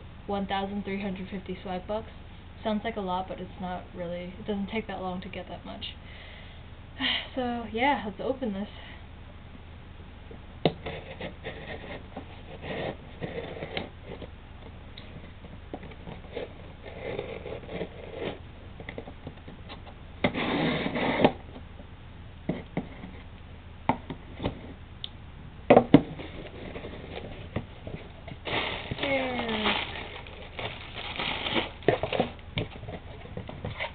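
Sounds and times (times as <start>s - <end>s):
cardboard scraping and rustling: 26.0s - 33.9s.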